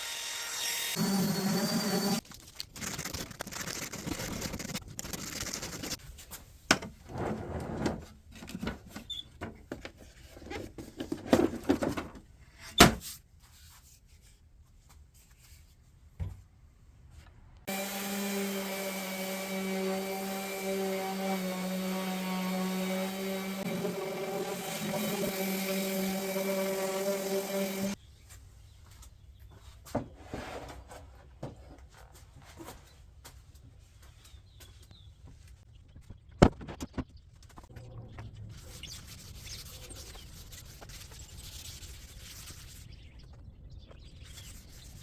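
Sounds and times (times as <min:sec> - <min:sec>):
small electric motor humming: 0:00.0 - 0:02.2, 0:17.7 - 0:28.0.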